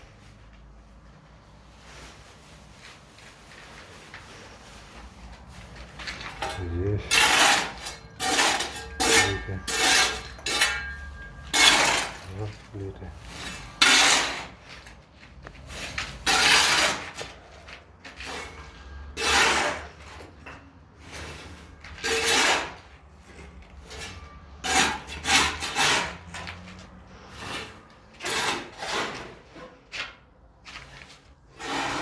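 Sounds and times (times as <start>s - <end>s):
rasping scraping strokes: 4.3s - 14.6s, 15.6s - 17.4s, 21.0s - 29.7s, 31.5s - 32.0s.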